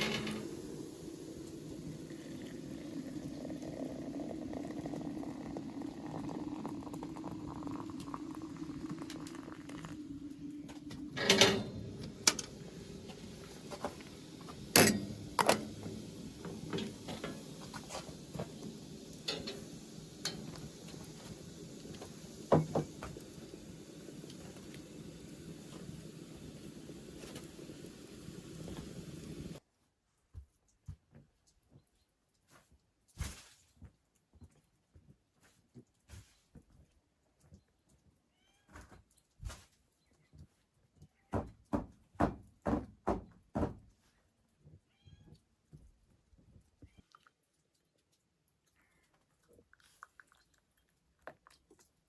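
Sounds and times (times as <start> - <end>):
cookware knocks and clinks: 0.0 - 0.6, 11.2 - 12.5, 14.8 - 17.4, 19.3 - 20.6
pot of liquid bubbling: 0.0 - 29.6.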